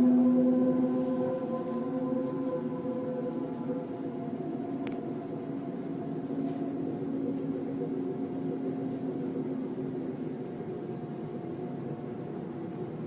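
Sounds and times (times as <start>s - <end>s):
low layered drone: 0.0s - 13.0s
rumbling hiss: 0.0s - 13.0s.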